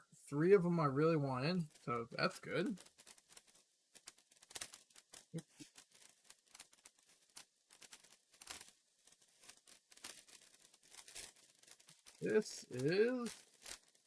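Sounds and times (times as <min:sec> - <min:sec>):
plastic bag crinkling: 0:01.6 - 0:14.0
plastic pieces clicking: 0:02.8 - 0:14.0.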